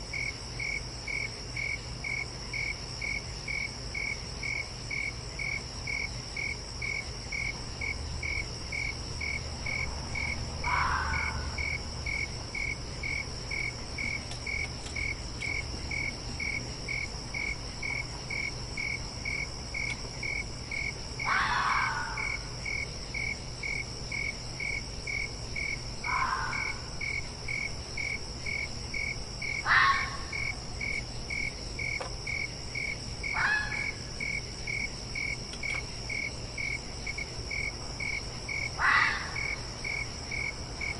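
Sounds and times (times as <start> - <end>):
crickets chirping: 0.0 - 40.9
high insect trill: 0.0 - 40.9
fox calls: 10.6 - 11.8, 21.2 - 22.5, 26.0 - 26.9, 29.5 - 30.5, 33.3 - 34.0, 38.7 - 39.7.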